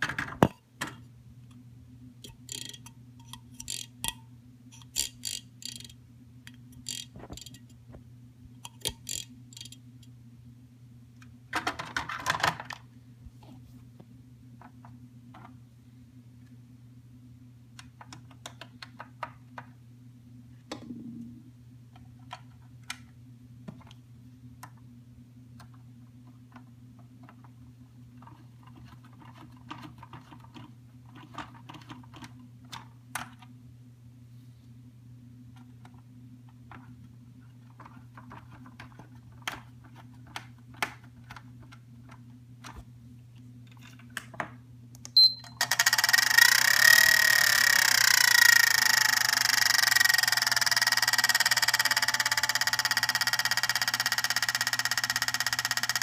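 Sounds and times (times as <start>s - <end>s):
electric fan motor humming: 1.2s - 11.6s, 34.8s - 56.0s.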